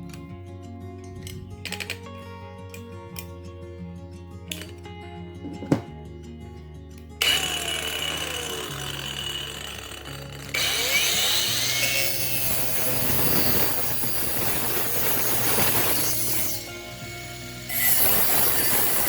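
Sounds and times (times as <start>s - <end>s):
background music: 0.0s - 19.0s
power saw cutting wood: 7.2s - 19.0s.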